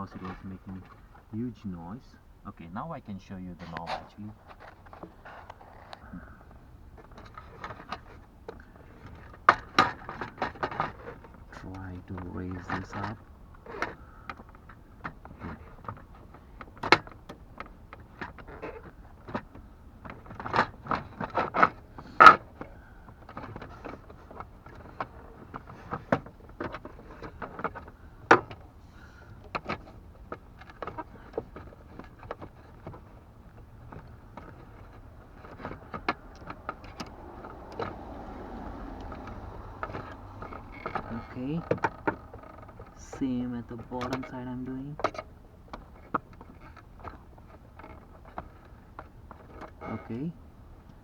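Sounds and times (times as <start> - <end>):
clicks taps and scrapes: 3.4 - 51.0.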